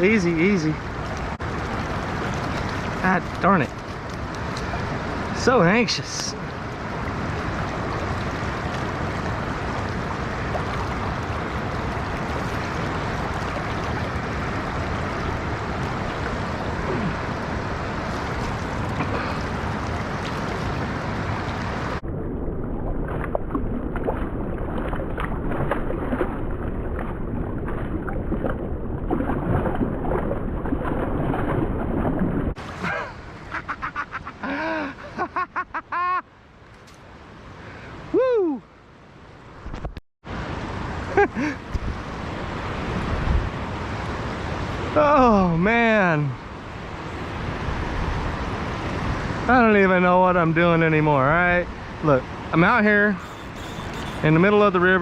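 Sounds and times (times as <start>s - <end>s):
river water rushing: 0.0s - 22.0s, 23.0s - 35.3s, 36.3s - 39.6s, 40.3s - 54.8s
close splashing and knocks: 1.7s - 4.9s, 23.0s - 32.8s
wind on microphone: 41.7s - 43.7s.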